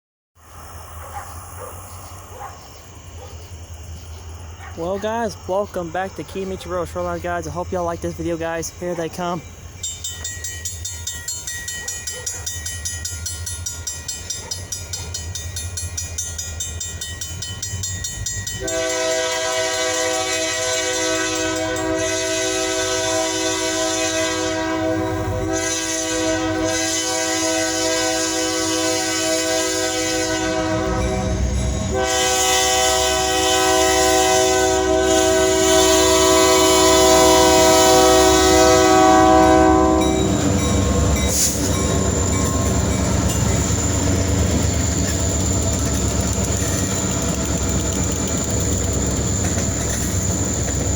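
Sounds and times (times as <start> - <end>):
locomotive rumble: 0.5 - 50.9
locomotive air horn: 18.6 - 44.3.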